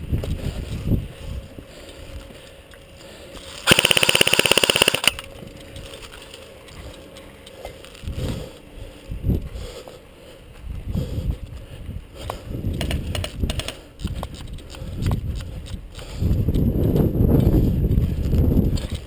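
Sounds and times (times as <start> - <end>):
airsoft gun full-auto burst: 3.6 - 5.2.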